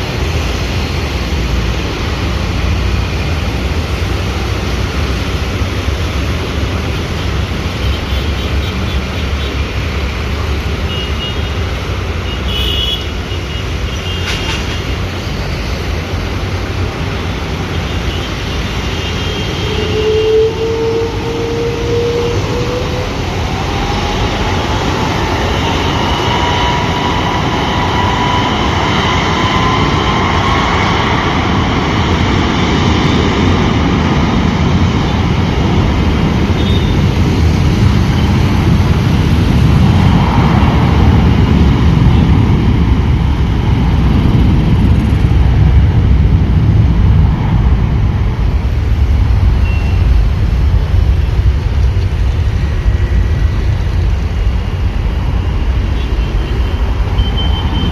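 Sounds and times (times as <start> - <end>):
jet engines rumbling: 0.0 - 57.9
rising engine whine: 14.8 - 57.9.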